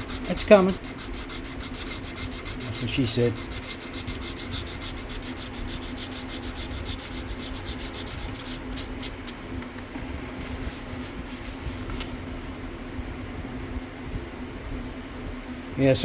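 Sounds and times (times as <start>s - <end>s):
hand sanding with sandpaper: 0.0s - 12.6s.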